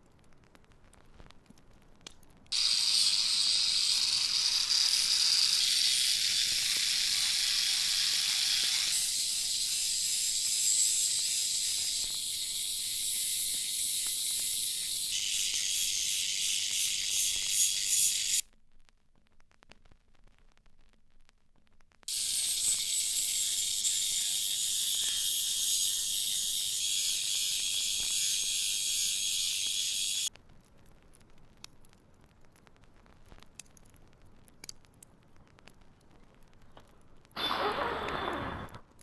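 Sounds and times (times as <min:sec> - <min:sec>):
high-pitched spray hissing: 0:02.6 - 0:18.4, 0:22.1 - 0:30.3, 0:37.4 - 0:38.7.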